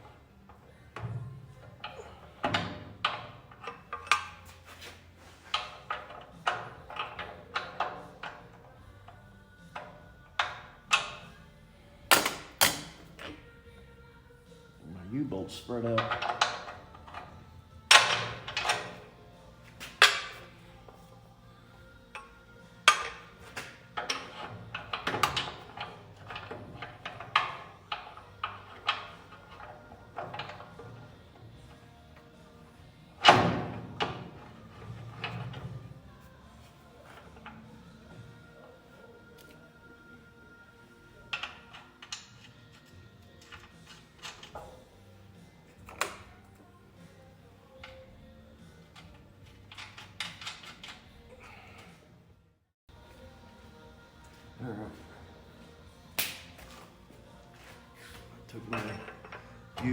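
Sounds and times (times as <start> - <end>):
metal clanks and knocks: 1.0 - 4.9, 15.9 - 17.3, 17.9 - 19.1, 19.7 - 20.6, 22.2 - 31.1, 57.7 - 59.9.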